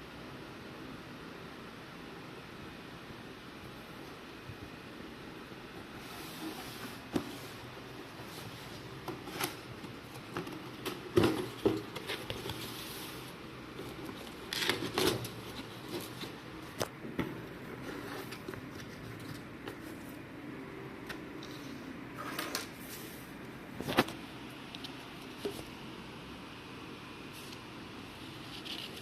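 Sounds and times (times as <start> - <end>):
steady hiss: 0.0 - 16.9
packaging rustling: 7.0 - 16.9.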